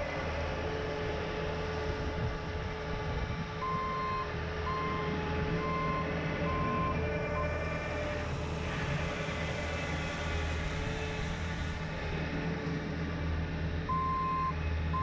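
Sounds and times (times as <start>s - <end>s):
skid steer running with brush cutter: 0.0s - 13.8s
backup alarm beeping: 13.9s - 15.0s.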